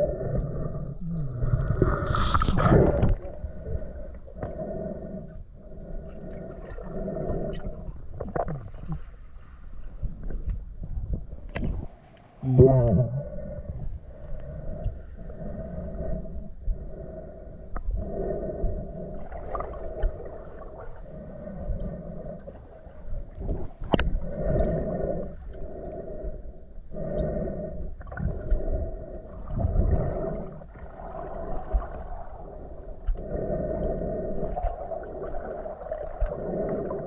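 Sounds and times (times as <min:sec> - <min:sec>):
water gurgling underwater: 0:00.0 - 0:04.1, 0:06.5 - 0:09.1, 0:28.0 - 0:37.0.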